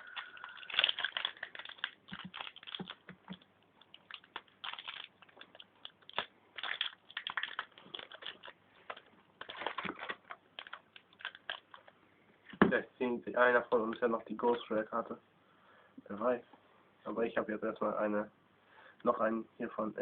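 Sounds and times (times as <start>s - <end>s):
cards and wrappers being handled: 0.0s - 12.0s.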